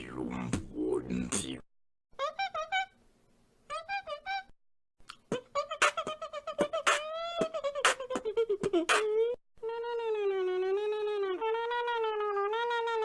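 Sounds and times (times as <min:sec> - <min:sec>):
beatboxing clicks and hits: 0:05.0 - 0:09.2.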